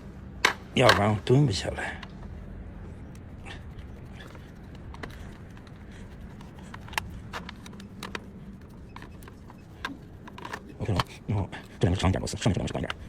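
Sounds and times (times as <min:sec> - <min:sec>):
low steady hum: 0:00.0 - 0:13.0
small clicks and taps: 0:03.1 - 0:11.2.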